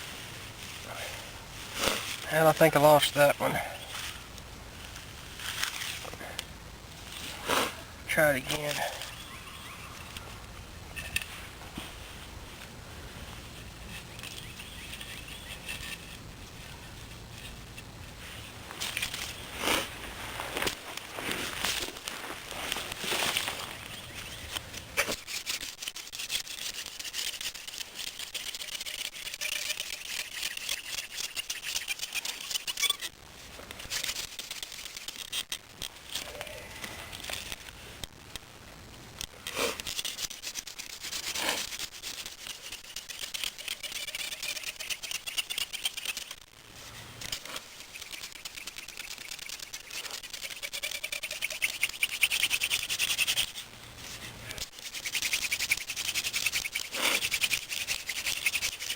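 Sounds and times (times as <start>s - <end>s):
spindle rubbing on wooden board: 25.1s - 33.1s, 40.0s - 46.4s, 47.8s - 58.9s.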